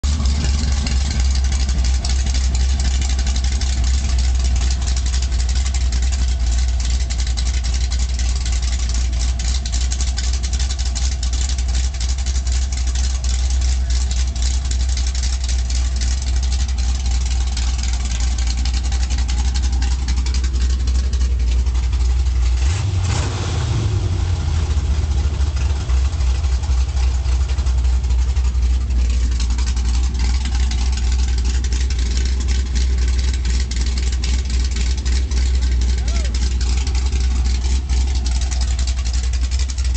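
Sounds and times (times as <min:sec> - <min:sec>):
engine idling roughly: 0:00.0 - 0:39.9.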